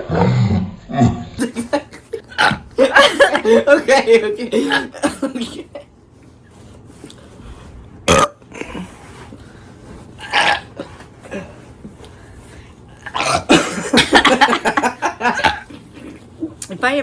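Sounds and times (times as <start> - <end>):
person burping: 0.0 - 3.0, 8.1 - 8.9, 10.2 - 11.5, 13.0 - 14.0.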